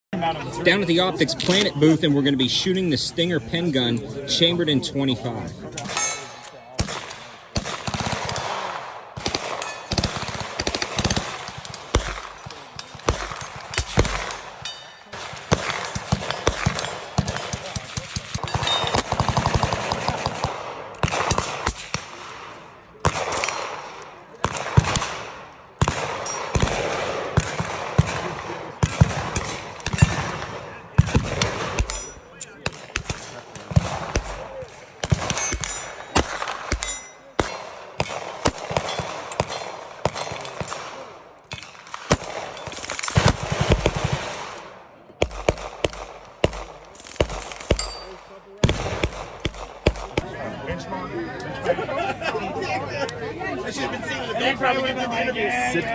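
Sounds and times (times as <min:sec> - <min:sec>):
single echoing gunshots: 0:05.8 - 0:50.4
rapid gunfire burst: 0:06.8 - 0:32.0, 0:41.8 - 0:44.6, 0:48.6 - 0:50.2.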